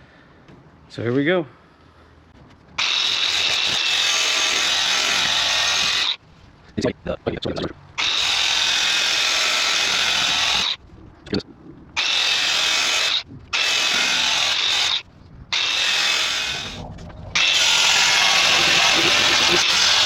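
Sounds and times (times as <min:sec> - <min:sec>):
power sander grinding fiberglass: 0:02.8 - 0:06.2, 0:12.0 - 0:15.0, 0:15.6 - 0:16.8, 0:17.4 - 0:20.0.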